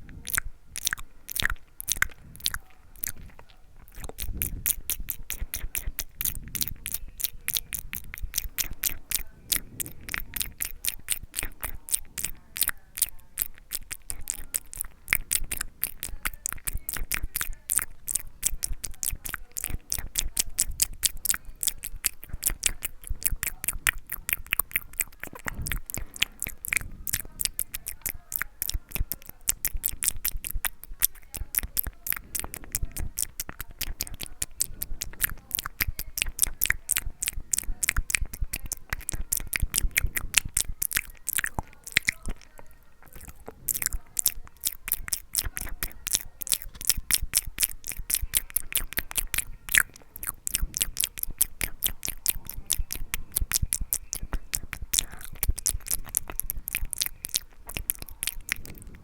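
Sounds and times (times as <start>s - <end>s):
wet mouth clicks and smacks: 0.0s - 59.0s.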